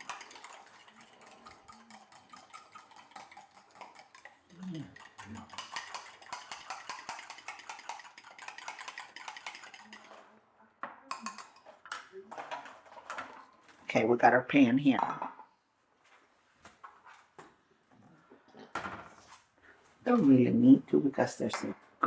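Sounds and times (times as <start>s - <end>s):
whisk clicking against bowl: 0.0s - 10.2s, 11.1s - 11.6s.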